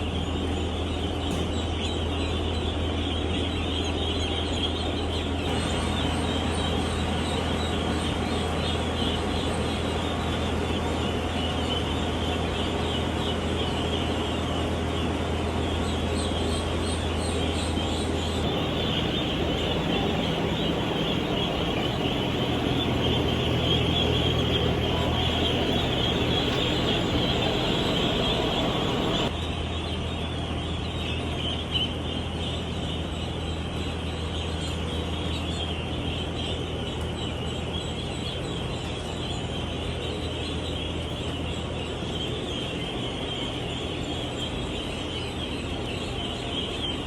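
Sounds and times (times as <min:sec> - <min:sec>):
steady low hum: 0:00.0 - 0:31.0
flock of ducks calling: 0:18.4 - 0:29.3.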